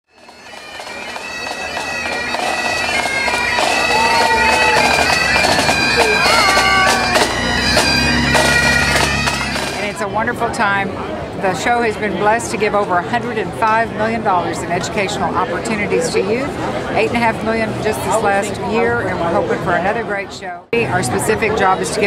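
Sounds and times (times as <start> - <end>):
wind instrument melody: 0.1 - 10.8
held drone notes: 1.0 - 10.5.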